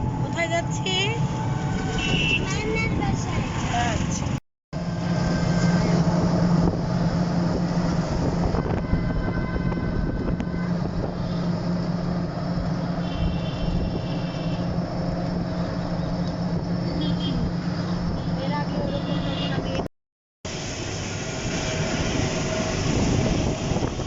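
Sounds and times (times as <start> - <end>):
vehicle interior running noise: 0.0 - 19.9, 20.5 - 24.0.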